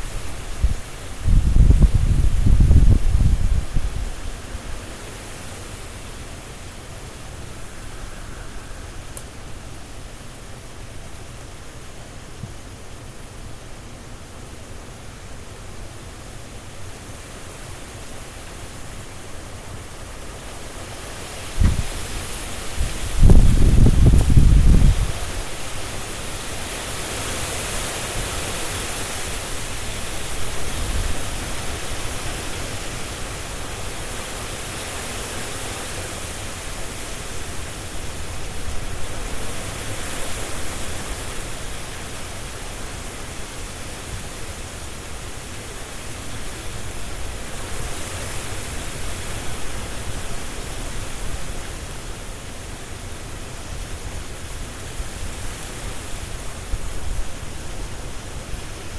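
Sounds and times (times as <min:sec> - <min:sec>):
leaves rustling: 0:00.0 - 0:58.9
wind blowing through trees: 0:00.0 - 0:58.9.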